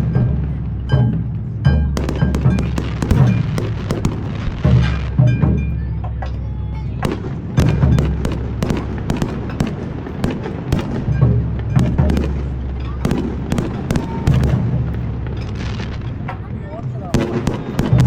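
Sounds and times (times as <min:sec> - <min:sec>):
deep firework booms: 0:01.9 - 0:05.6, 0:07.0 - 0:16.2
fireworks cracks and bangs: 0:01.9 - 0:18.0.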